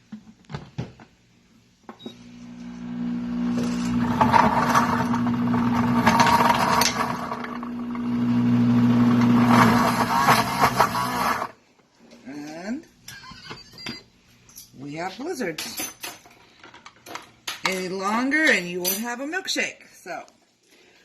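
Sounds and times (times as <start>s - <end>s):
blender motor churning: 2.4s - 11.6s.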